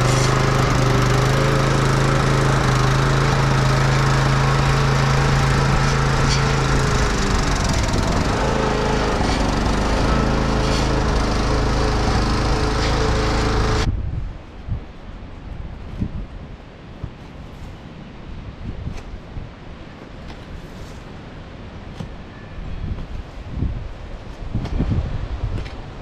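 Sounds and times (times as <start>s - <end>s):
blade chewing through soil: 0.0s - 13.9s
small engine running hard: 0.0s - 13.9s
wind on microphone: 6.6s - 9.8s, 13.8s - 16.6s, 22.6s - 26.0s.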